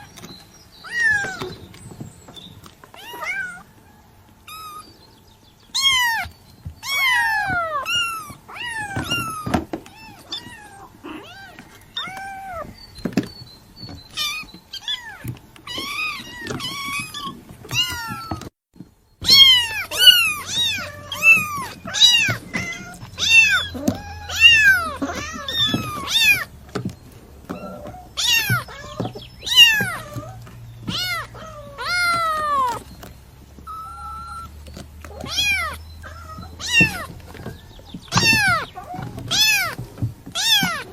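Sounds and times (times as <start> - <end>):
kitten meowing: 0.8 - 1.5, 3.0 - 3.6, 5.7 - 12.7, 19.2 - 26.5, 27.5 - 32.9, 33.7 - 40.9.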